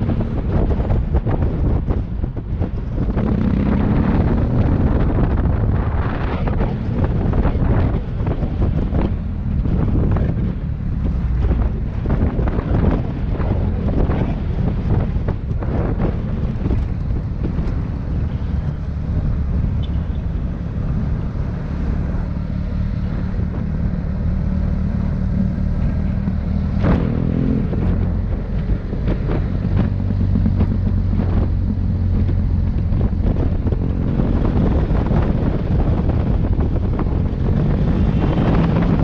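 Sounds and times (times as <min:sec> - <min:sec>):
wind blowing on microphone: 0:00.0 - 0:39.0
motorcycle engine running: 0:23.0 - 0:39.0.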